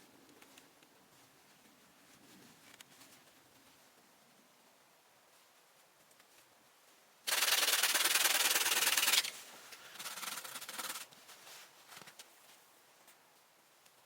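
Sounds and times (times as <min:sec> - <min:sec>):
rough scraping: 0:07.3 - 0:12.2.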